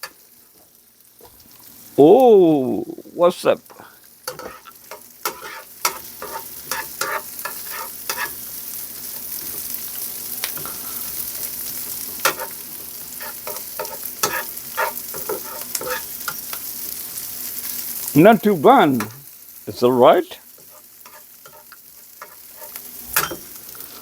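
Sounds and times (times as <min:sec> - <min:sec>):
onion sizzling in hot oil: 0:00.0 - 0:24.0
spatula scraping a pan: 0:03.8 - 0:17.8, 0:20.5 - 0:24.0.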